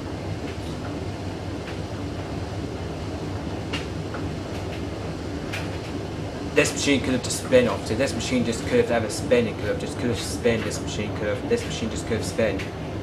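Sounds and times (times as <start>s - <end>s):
washing machine drum rumbling: 0.0s - 13.0s.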